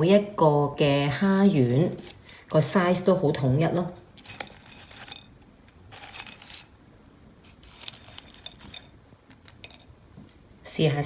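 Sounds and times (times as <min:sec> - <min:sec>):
takeout food packaging crinkling: 0:04.1 - 0:06.8, 0:07.4 - 0:10.5.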